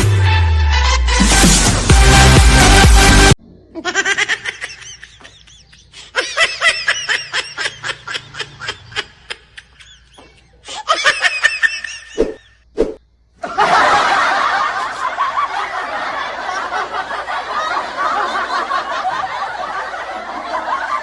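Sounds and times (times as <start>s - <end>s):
high-pitched voice laughing: 3.7s - 12.4s.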